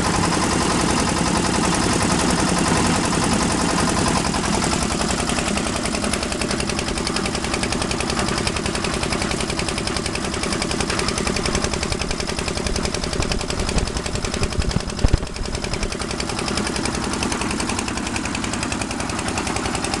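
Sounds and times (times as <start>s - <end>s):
concrete mixer engine running: 0.0s - 20.0s
loud thumps: 11.6s - 16.1s.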